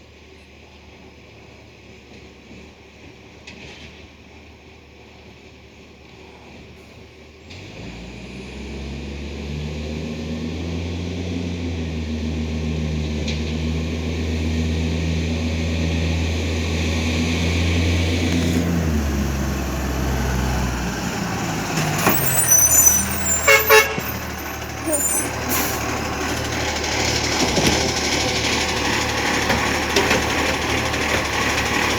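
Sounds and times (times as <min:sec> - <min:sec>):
truck diesel engine running: 0:07.9 - 0:31.9.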